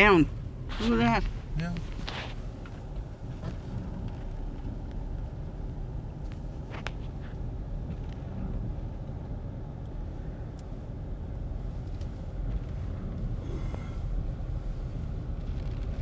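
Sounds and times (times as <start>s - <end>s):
car engine and tyres rumbling: 0.0s - 16.0s.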